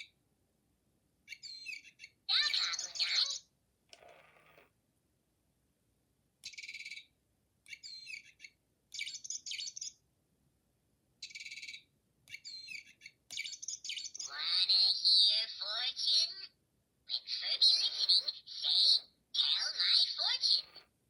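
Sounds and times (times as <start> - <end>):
toy bird chirping: 1.3 - 3.5, 6.4 - 7.1, 7.7 - 10.0, 11.2 - 16.5, 17.1 - 20.8.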